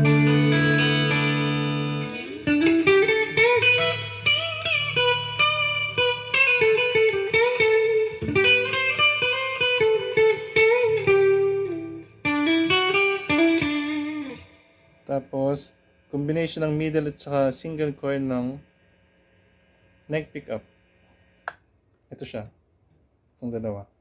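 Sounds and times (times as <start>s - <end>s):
clean electric guitar playing: 0.0s - 15.5s.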